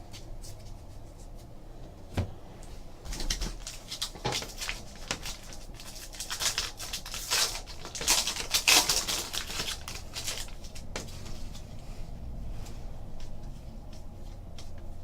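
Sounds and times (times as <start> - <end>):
trading cards snapping and rustling: 3.1 - 11.2.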